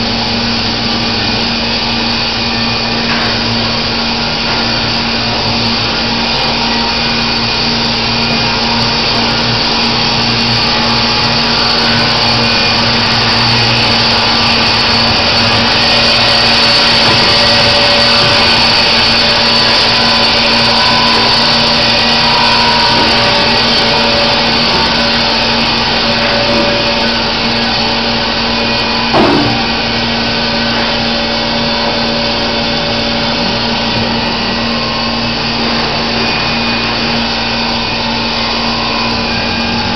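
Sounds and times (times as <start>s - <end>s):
band saw humming: 0.0s - 39.9s
sharp knock: 29.1s - 29.7s.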